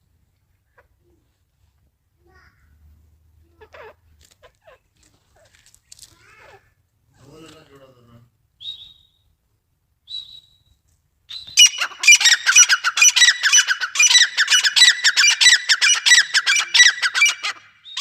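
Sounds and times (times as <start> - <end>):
francolin calling: 11.3 - 18.0.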